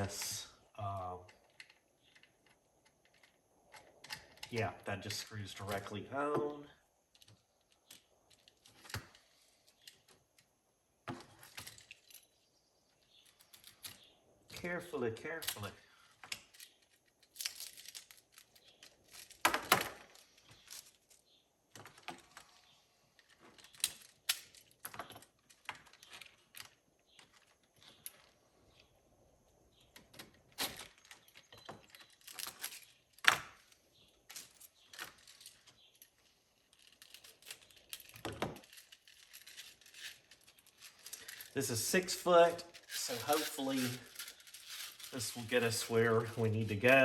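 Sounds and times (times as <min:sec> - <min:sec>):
plastic packaging crinkling: 0:36.6 - 0:47.0.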